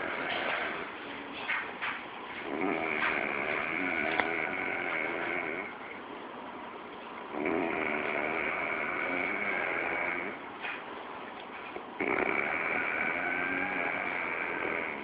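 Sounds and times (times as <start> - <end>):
woman snoring: 2.4 - 5.8, 7.3 - 10.4, 12.0 - 15.0.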